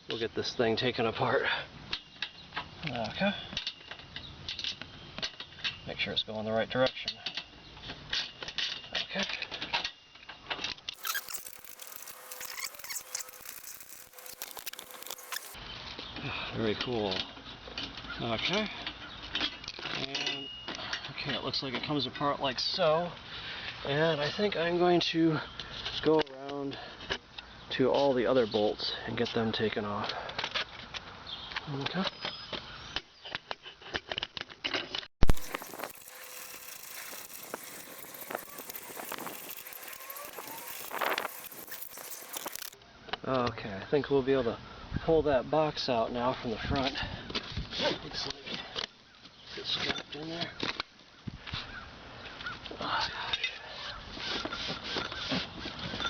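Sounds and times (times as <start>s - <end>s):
ratchet wrench clicking: 11.0s - 15.6s, 35.3s - 42.8s.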